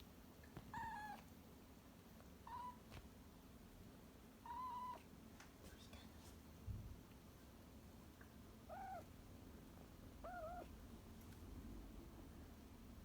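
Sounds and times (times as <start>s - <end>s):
kitten meowing: 0.7s - 1.2s, 2.5s - 2.8s, 4.5s - 5.0s, 8.7s - 9.1s, 10.2s - 10.7s.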